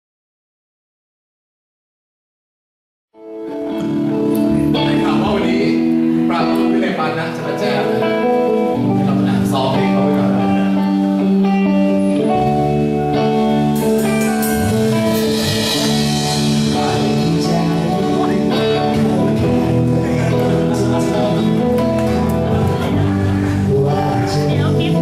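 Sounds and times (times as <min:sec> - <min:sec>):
electric guitar chords: 0:03.2 - 0:25.0
bass guitar: 0:03.3 - 0:25.0
drums and cymbals: 0:13.3 - 0:21.0.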